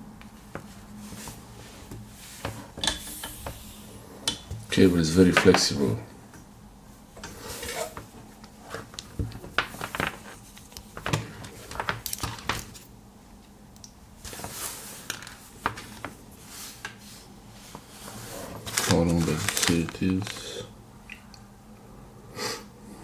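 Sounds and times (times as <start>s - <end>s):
soft cable rustling: 14.2s - 20.5s.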